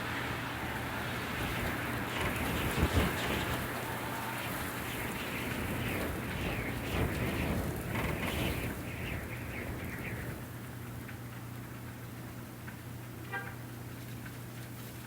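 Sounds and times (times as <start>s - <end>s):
wind blowing in gusts: 0.0s - 11.0s.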